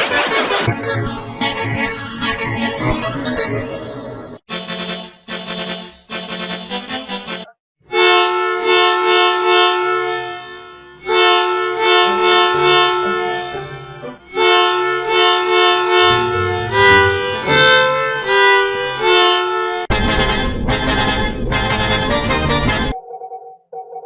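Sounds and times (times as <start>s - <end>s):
musical bus horn: 4.5s - 23.0s
low hum: 15.9s - 18.6s.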